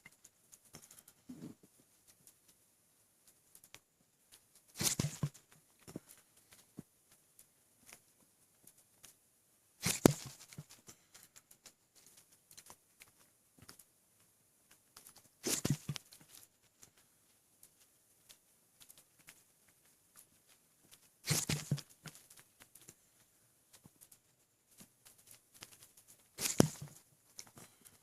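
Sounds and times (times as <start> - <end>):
faint clicks and rustles: 0.0 - 28.0.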